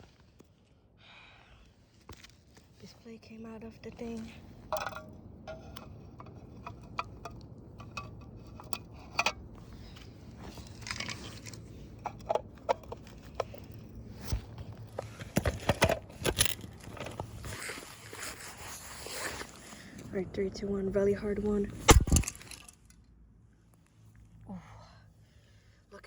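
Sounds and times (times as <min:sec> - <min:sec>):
clock parts clicking and rattling: 0:04.6 - 0:09.6, 0:10.7 - 0:13.9.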